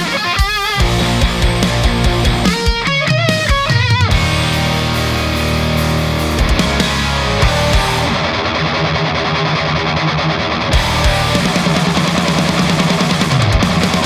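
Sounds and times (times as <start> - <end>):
distorted electric guitar riffs: 0.0 - 14.0
drums: 0.0 - 14.0.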